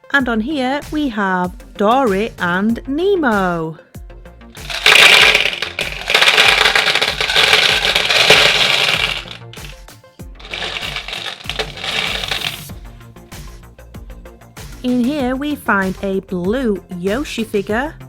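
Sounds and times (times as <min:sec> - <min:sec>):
background music: 0:00.0 - 0:18.0
plastic packaging crinkling: 0:04.6 - 0:09.7, 0:10.4 - 0:12.7.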